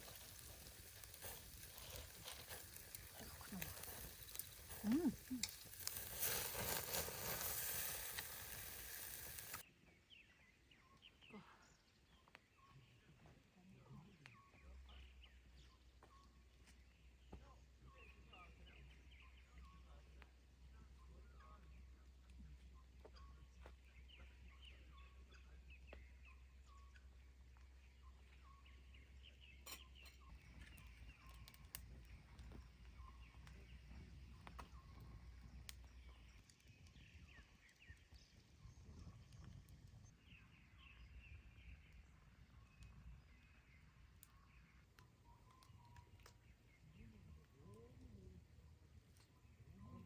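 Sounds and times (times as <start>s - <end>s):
small birds chirping: 0.0s - 50.0s.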